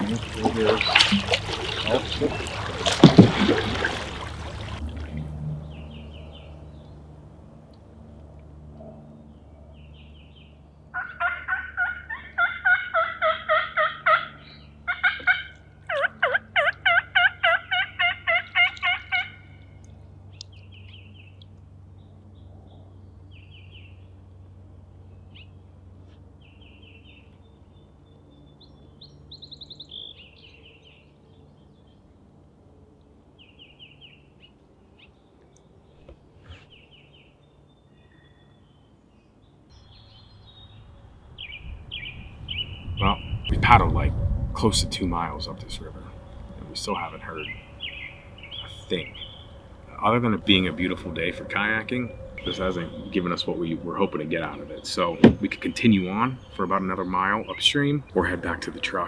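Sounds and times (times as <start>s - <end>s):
songbirds chirping: 0.0s - 7.2s, 8.2s - 59.0s
turkey call yelps: 11.0s - 19.5s.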